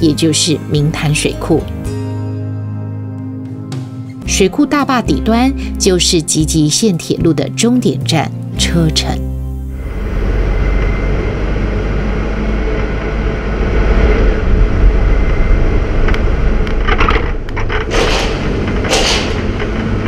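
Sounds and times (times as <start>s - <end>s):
diesel train rumbling: 4.3s - 20.0s.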